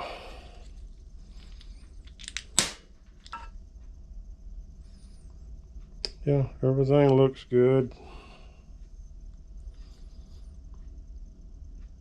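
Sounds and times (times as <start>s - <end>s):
faint steady hum: 0.0s - 12.0s
small metal parts clicking: 1.3s - 2.6s.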